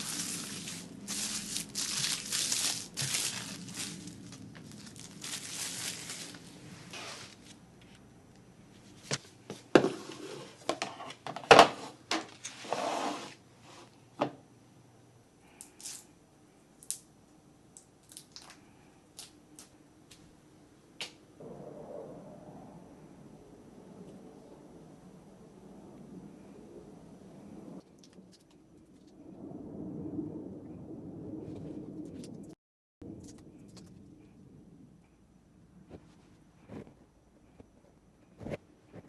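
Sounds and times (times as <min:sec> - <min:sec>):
plastic packaging crinkling: 0:00.0 - 0:07.6
containers being set down: 0:09.1 - 0:12.4.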